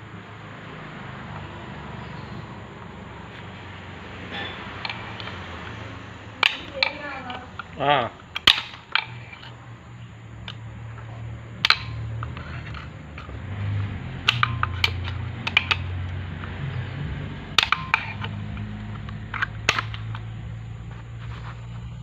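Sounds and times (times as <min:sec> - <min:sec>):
low steady hum: 0:00.0 - 0:22.0
tools clicking and knocking: 0:04.3 - 0:21.8.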